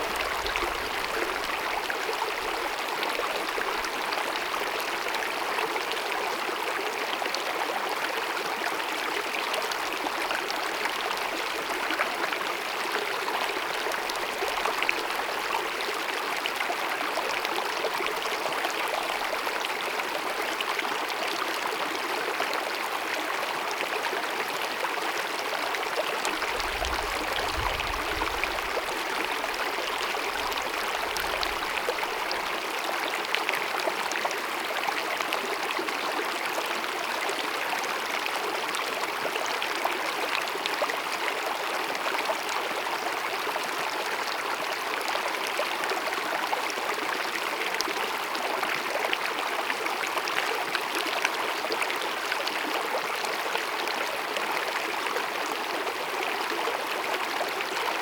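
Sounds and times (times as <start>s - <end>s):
stream babbling: 24.1s - 37.2s.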